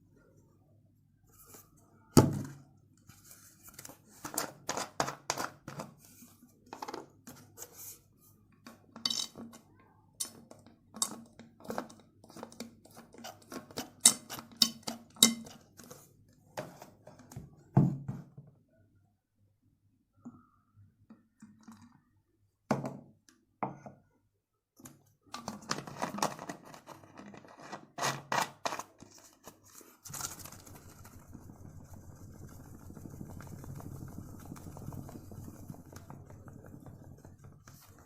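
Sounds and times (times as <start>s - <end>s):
utensil scraping mixing container: 3.8s - 6.0s, 11.0s - 17.0s, 25.4s - 38.0s.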